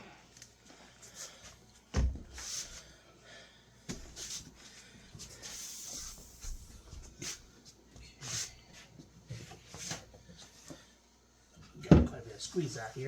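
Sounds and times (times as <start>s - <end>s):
hissy rubbing strokes: 5.3s - 7.5s.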